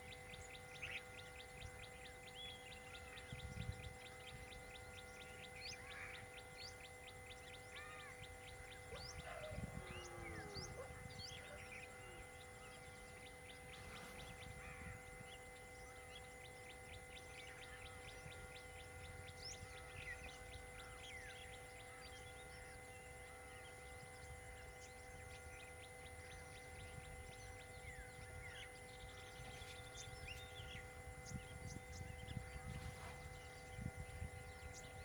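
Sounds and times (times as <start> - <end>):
bird chirps: 0.0 - 35.0
thin hum: 8.1 - 21.0, 22.6 - 35.0.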